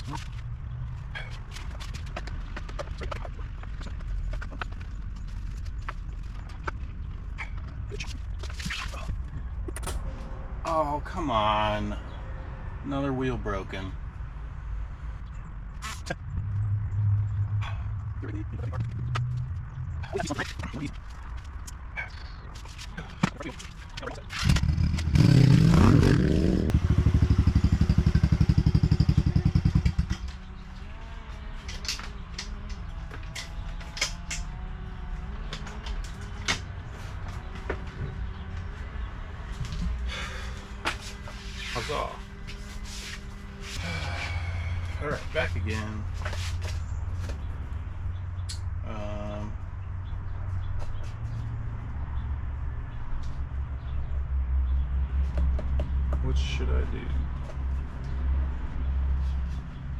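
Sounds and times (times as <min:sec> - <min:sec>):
low hum: 0:13.9 - 0:50.7
small engine revving: 0:24.3 - 0:46.9.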